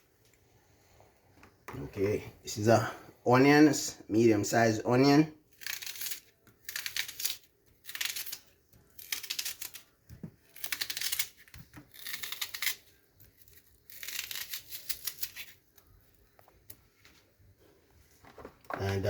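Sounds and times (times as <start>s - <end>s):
onion crackling by hand: 5.5s - 16.8s.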